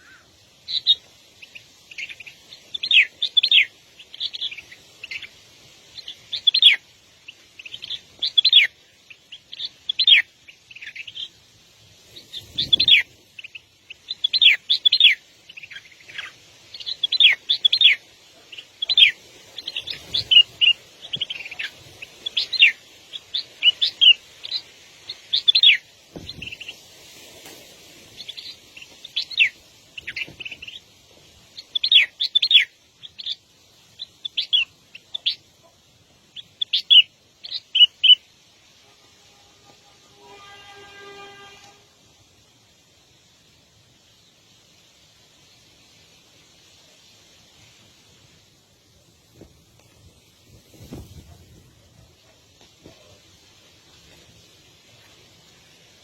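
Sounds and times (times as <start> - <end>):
small birds chirping: 0.0 - 38.6.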